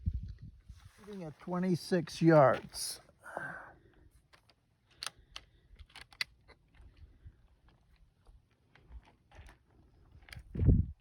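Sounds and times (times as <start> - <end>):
air rifle handling clicks: 4.3 - 6.8.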